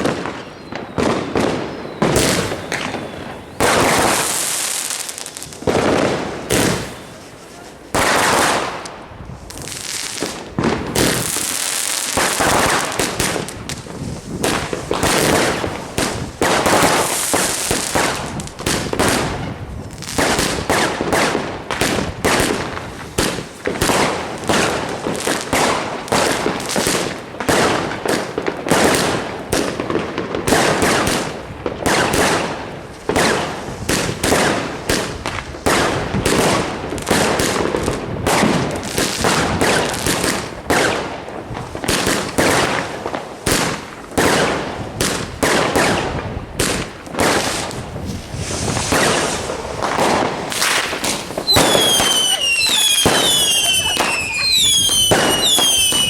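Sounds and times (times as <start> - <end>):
fireworks bangs and crackles: 0.0 - 56.0
fireworks hissing: 2.2 - 20.2, 47.3 - 56.0.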